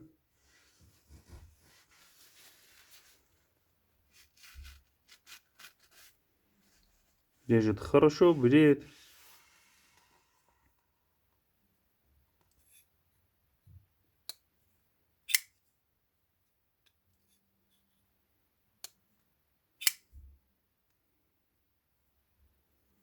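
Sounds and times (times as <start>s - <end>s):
folding knife clicking open and shut: 15.3s - 15.5s, 19.8s - 20.1s.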